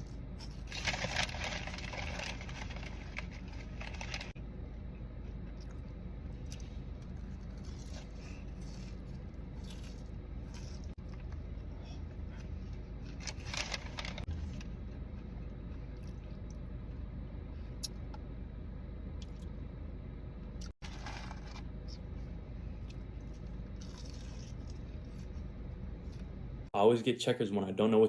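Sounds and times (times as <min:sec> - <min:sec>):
food rustling and crunching: 0:00.0 - 0:04.4, 0:05.3 - 0:16.6, 0:20.6 - 0:22.2, 0:22.8 - 0:26.4
steady low hum: 0:00.0 - 0:28.0.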